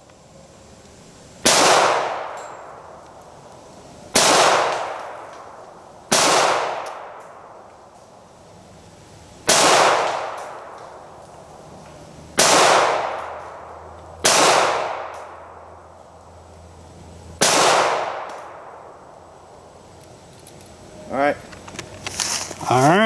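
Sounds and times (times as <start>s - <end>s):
pistol shots with echo: 1.4s - 2.5s, 4.1s - 5.2s, 6.1s - 7.3s, 9.5s - 10.7s, 12.4s - 13.6s, 14.2s - 15.6s, 17.4s - 18.7s.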